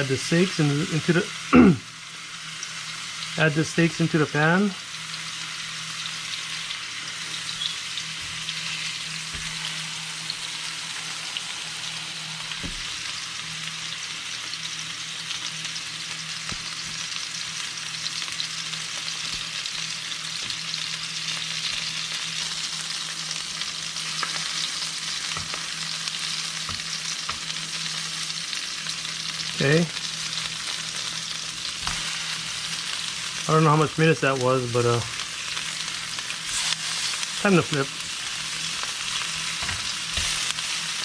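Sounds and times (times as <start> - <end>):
fish searing in a frying pan: 0.0 - 41.0.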